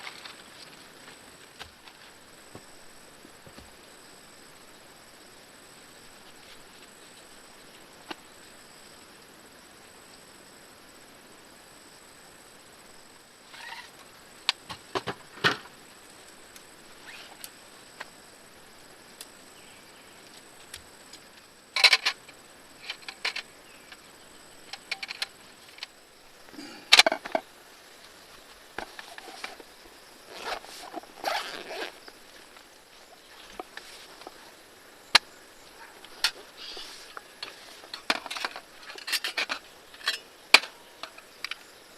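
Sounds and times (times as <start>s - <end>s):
faint steady hiss: 0.0s - 41.9s
camp gear clicking and knocking: 14.5s - 15.8s, 20.4s - 24.1s, 24.7s - 26.0s, 26.6s - 27.5s, 28.7s - 32.6s, 35.2s - 41.7s.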